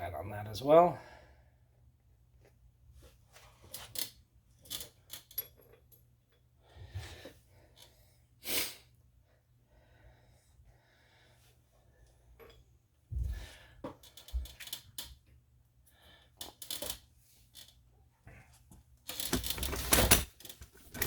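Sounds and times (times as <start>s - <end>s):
metal tools clicking and clinking: 4.7s - 6.0s, 19.1s - 21.0s.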